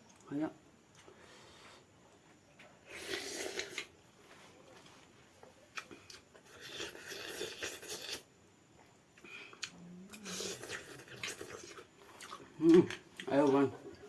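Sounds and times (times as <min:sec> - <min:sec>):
person chewing: 0:03.0 - 0:03.9, 0:05.7 - 0:08.3, 0:09.2 - 0:14.0.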